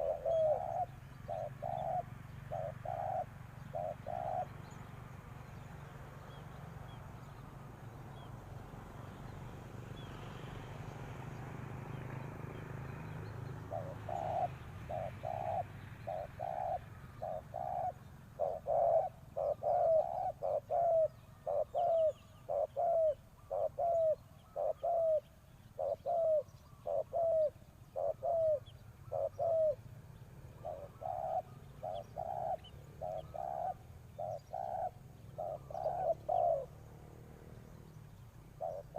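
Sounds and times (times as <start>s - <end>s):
dove cooing: 0.0s - 4.8s, 13.0s - 37.1s, 37.8s - 38.9s.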